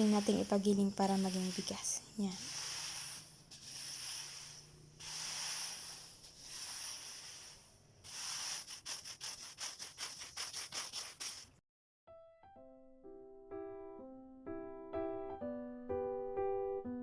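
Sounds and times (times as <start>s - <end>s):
rice grains swishing: 0.0s - 11.6s.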